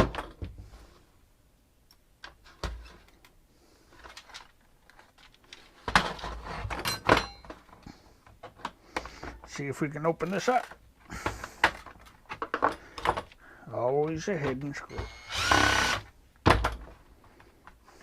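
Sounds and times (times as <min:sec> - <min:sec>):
tools knocking and rattling: 0:05.0 - 0:09.5.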